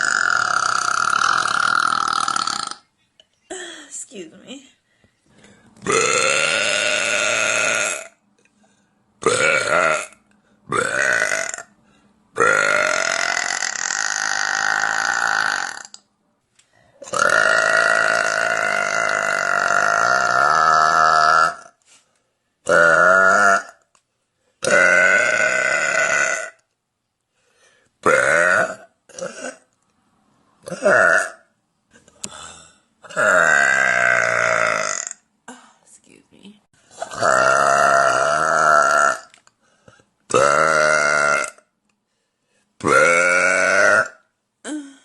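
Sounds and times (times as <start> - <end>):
woman burping: 0.0 - 2.8, 5.8 - 8.2, 9.2 - 11.7, 12.4 - 16.0, 17.0 - 21.8, 24.6 - 26.6, 28.0 - 29.7, 30.6 - 31.5, 33.0 - 35.8, 37.0 - 39.4, 40.3 - 41.7, 42.8 - 45.0.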